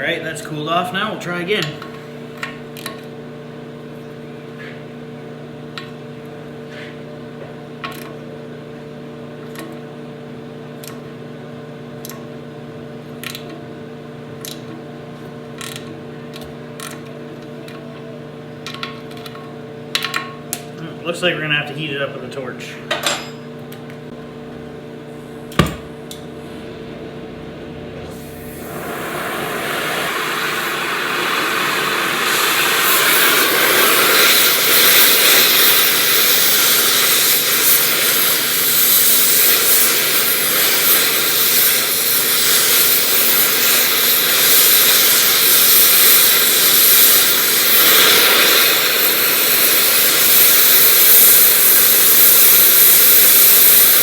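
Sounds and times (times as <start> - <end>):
gas torch hissing: 28.1 - 54.0.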